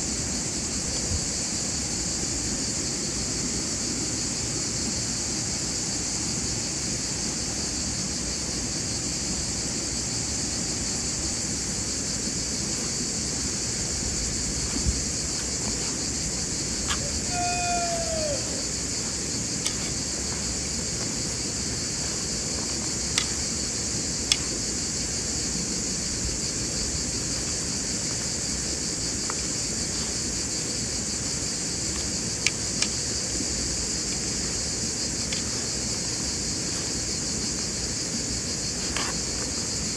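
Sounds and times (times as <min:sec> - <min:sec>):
crickets and insects chirring: 0:00.0 - 0:39.9
short call falling in pitch: 0:16.9 - 0:18.7.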